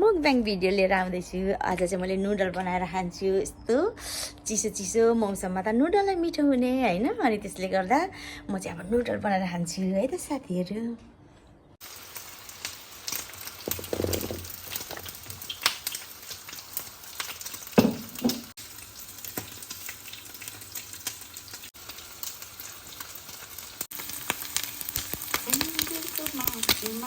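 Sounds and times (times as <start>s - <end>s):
pork sizzling in a pan: 11.8s - 27.0s.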